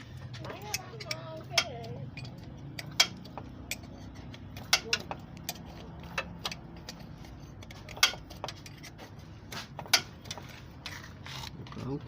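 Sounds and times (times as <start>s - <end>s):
hand tools clinking on metal: 0.4s - 9.0s.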